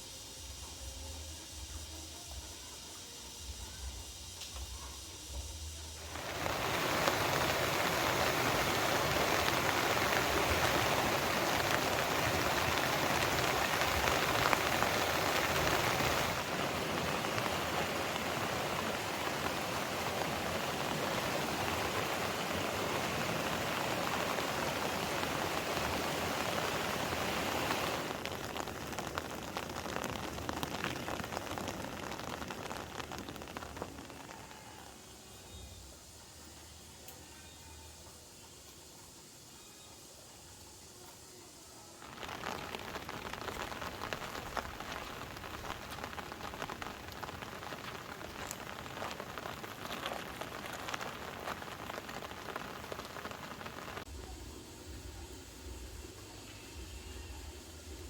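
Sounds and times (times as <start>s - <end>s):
heavy rain falling: 5.8s - 35.3s, 42.0s - 56.9s.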